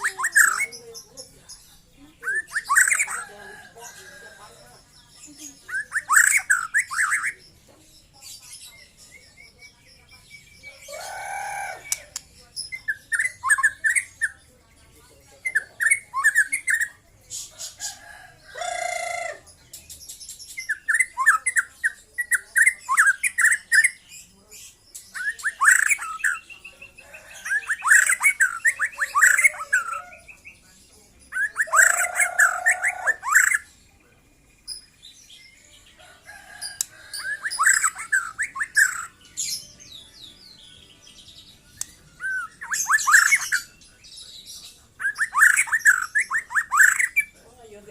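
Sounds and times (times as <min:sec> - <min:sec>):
harsh bird calls: 0:00.0 - 0:07.5, 0:10.6 - 0:14.6, 0:15.5 - 0:19.6, 0:20.2 - 0:34.0, 0:34.6 - 0:47.7
bird singing whistled notes: 0:36.9 - 0:47.4.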